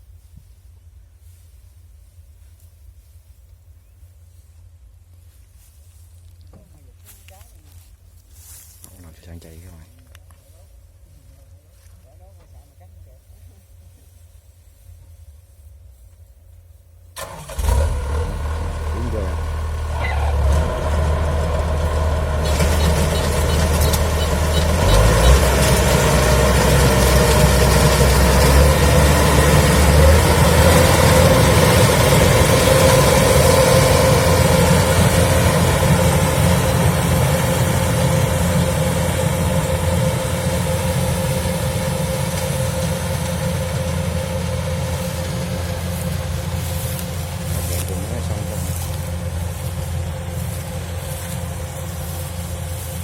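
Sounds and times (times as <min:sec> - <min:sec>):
combine harvester running: 0:17.2 - 0:53.0.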